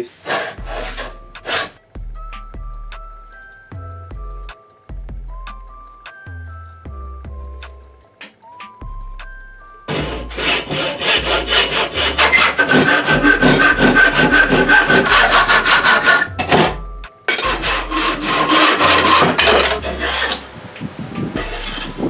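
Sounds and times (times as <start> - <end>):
hand tool rasping on wood: 0.0 - 1.8, 9.9 - 20.6, 21.4 - 22.0.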